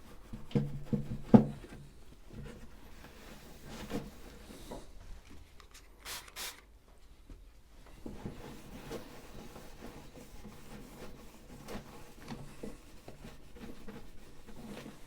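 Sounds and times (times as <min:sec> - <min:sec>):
spray bottle spraying: 0:06.0 - 0:06.6
cloth rubbing on plastic: 0:08.0 - 0:15.0.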